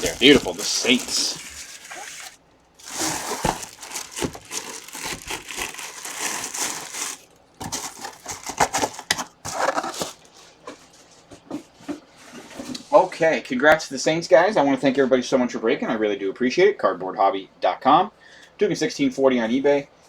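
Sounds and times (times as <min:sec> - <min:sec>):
packaging crinkling: 0:00.0 - 0:10.3.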